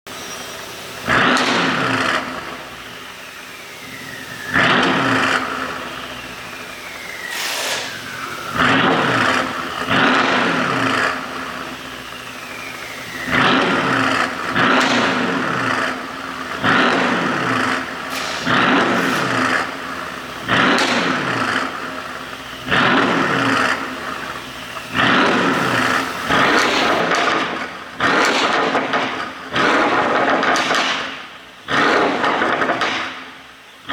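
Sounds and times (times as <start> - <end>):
car engine revving: 0.2 - 33.9
exhaust popping and crackling: 1.0 - 33.9
thin falling whistle: 6.0 - 8.6.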